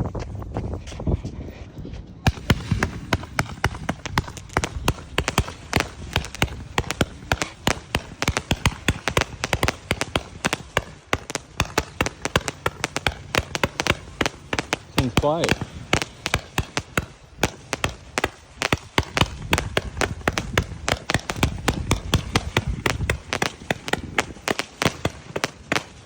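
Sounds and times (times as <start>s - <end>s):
firework rapid sharp pops: 2.3s - 26.0s.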